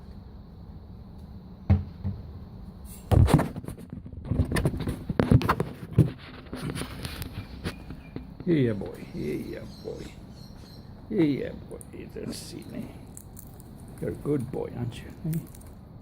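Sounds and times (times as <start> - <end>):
handling knocks and rustles: 3.1 - 9.0.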